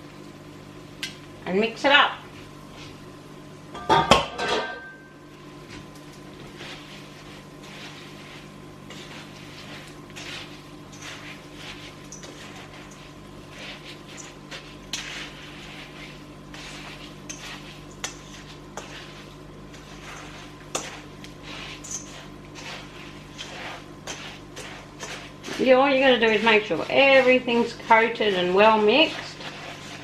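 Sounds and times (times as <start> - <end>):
steady low hum: 0.0 - 30.0
spoon stirring dry cereal: 6.4 - 30.0.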